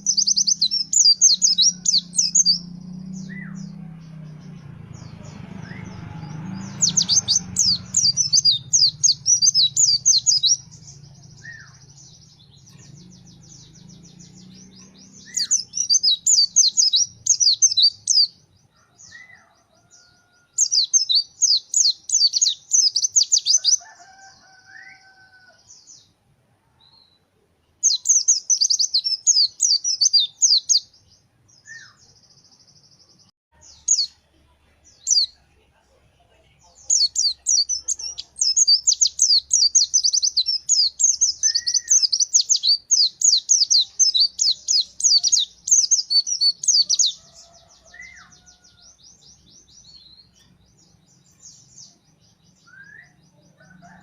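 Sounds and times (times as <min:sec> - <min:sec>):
bird high-pitched chattering song: 0:00.0 - 0:02.6, 0:06.7 - 0:18.4, 0:20.6 - 0:23.8, 0:27.9 - 0:30.9, 0:34.9 - 0:35.4, 0:36.8 - 0:48.4.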